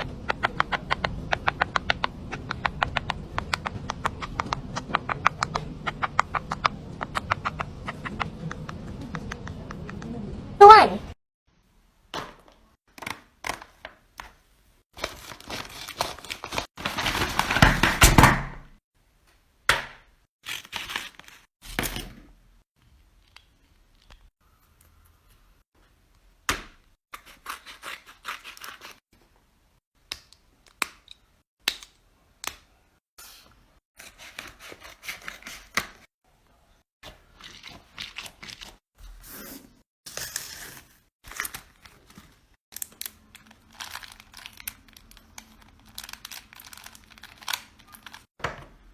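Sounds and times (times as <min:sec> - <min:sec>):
crinkly handling noise: 0:12.4 - 0:18.4, 0:20.4 - 0:22.2, 0:37.0 - 0:38.8, 0:40.1 - 0:48.3.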